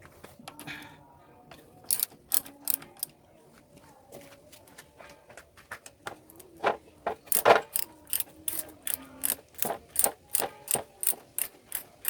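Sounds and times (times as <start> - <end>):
ratchet wrench clicking: 1.9 - 3.1, 7.3 - 12.0.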